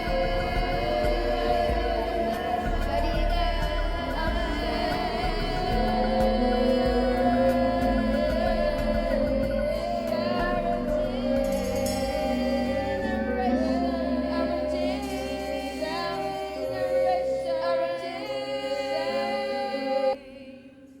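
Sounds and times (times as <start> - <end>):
wordless sung voices over drone: 0.0 - 21.0.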